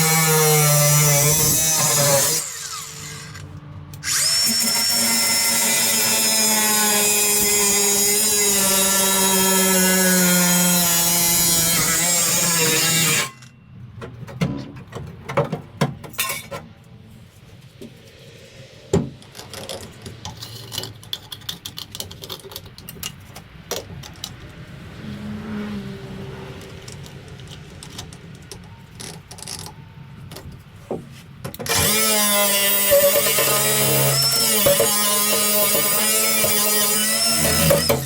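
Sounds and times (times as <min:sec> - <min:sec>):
power tool whining: 0:00.0 - 0:13.5, 0:31.6 - 0:38.0
tools and parts knocking: 0:14.0 - 0:16.7.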